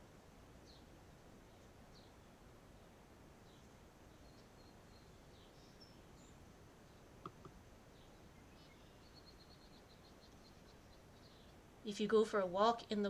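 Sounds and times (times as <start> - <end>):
small bird chirps: 3.5 - 12.0
faint clicks: 7.2 - 7.6.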